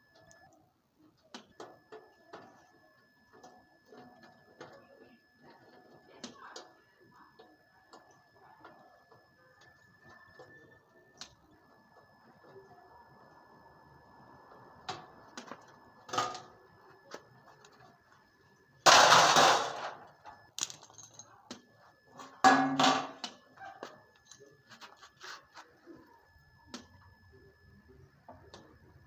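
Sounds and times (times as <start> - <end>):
metal clanks and knocks: 22.4 - 23.3.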